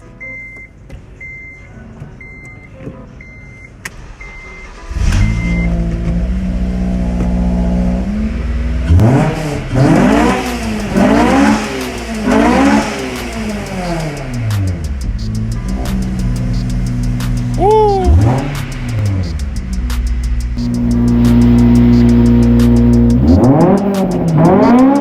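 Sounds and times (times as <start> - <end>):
car warning chime beeping: 0.0 - 5.8, 20.6 - 25.0.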